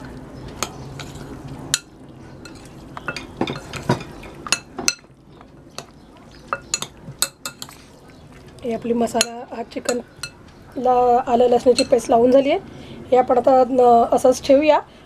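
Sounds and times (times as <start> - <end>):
chicken mixed with paste in bowl: 0.0 - 12.2
clinks and taps against bowl: 6.5 - 7.8, 9.2 - 10.4.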